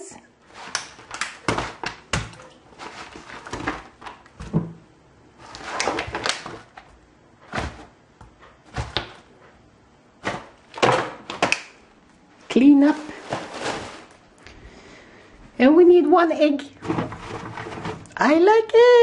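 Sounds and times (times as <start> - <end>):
rustling and clattering: 0.4 - 4.8, 12.8 - 14.3, 16.8 - 18.2
kitchen items knocking: 0.6 - 4.8, 10.2 - 11.7, 16.8 - 18.1.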